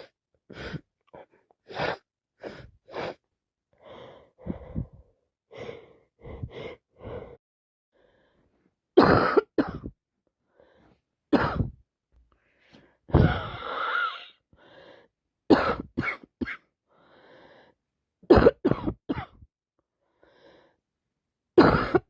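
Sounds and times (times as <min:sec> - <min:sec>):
person coughing: 0:09.0 - 0:10.0, 0:15.5 - 0:16.6, 0:18.3 - 0:19.4, 0:21.6 - 0:22.0.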